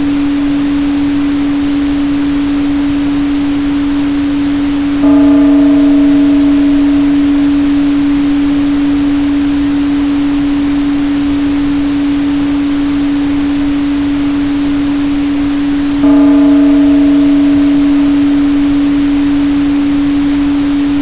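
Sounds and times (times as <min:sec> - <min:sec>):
steady tone: 0:03.8 - 0:21.0
struck bowl ring: 0:05.0 - 0:09.5, 0:16.0 - 0:21.0.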